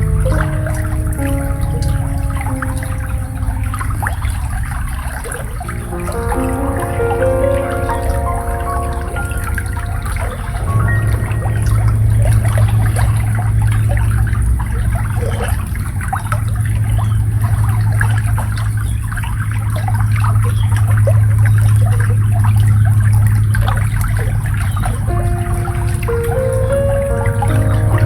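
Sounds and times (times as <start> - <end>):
shallow water babbling: 0.0 - 28.0.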